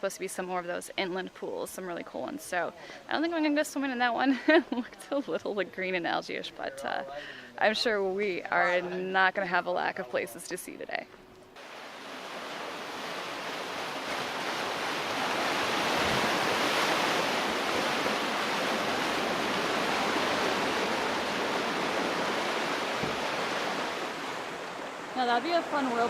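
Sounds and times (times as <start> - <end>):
sea water churning among rocks: 11.6 - 25.3.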